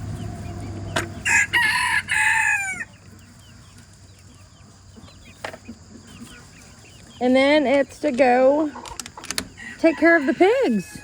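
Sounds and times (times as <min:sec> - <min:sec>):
rooster crowing: 0:01.2 - 0:03.0, 0:09.6 - 0:11.0.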